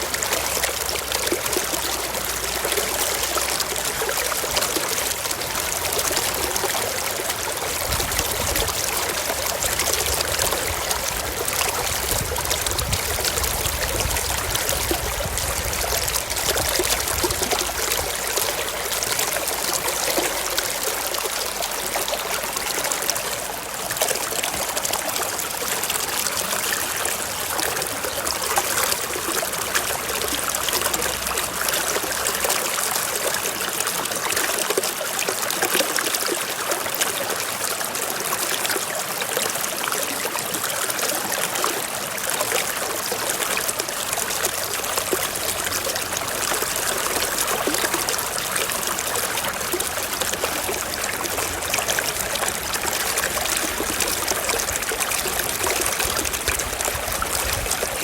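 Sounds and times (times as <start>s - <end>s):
stream running over rocks: 0.0s - 58.0s.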